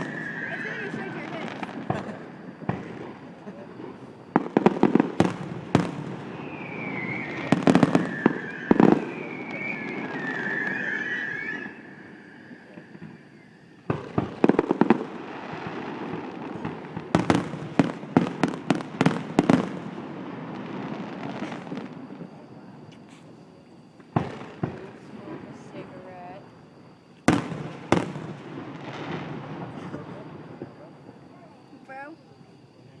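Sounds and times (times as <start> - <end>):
wavering high whistle: 0.0 - 2.6, 5.2 - 13.9
fireworks bursting with bangs: 0.0 - 31.3.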